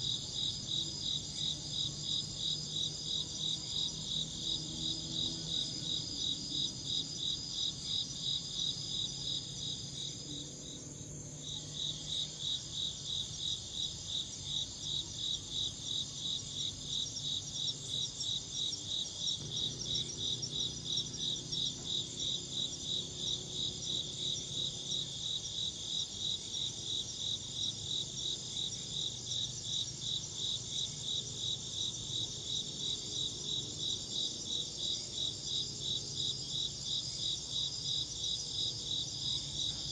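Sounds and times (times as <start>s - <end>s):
insects chirping: 0.0s - 39.9s.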